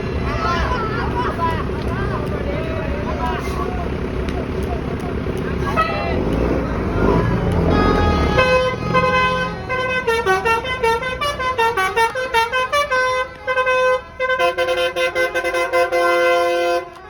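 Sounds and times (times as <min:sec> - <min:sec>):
musical bus air horn: 0:07.1 - 0:17.0.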